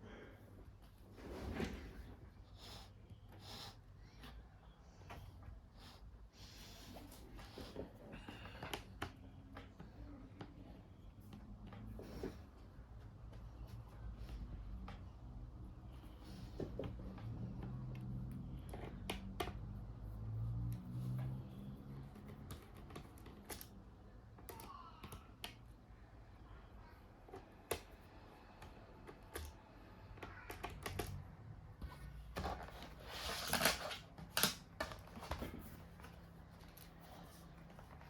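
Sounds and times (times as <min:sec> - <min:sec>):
rustling scrape: 0:01.0 - 0:02.3, 0:32.4 - 0:34.1.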